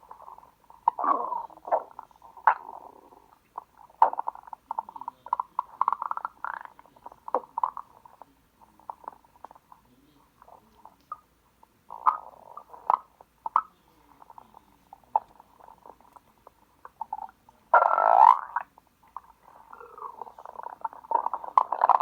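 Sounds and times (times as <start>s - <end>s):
stomach growling: 0.0s - 22.0s.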